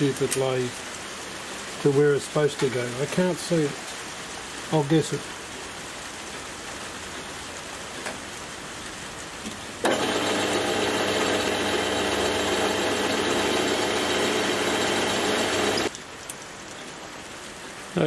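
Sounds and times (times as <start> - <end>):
metal lathe running: 9.9 - 15.9.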